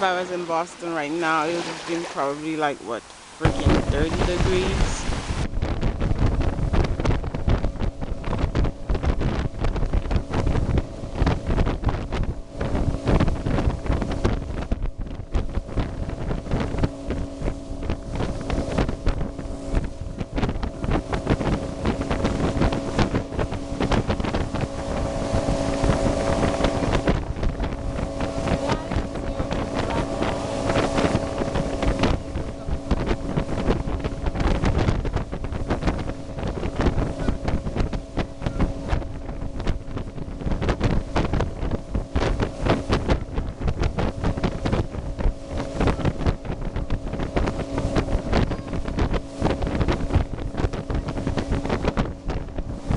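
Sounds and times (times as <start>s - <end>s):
water hiss: 0.0s - 5.5s
motorboat engine running: 0.0s - 52.9s
wind buffeting microphone: 0.0s - 52.9s.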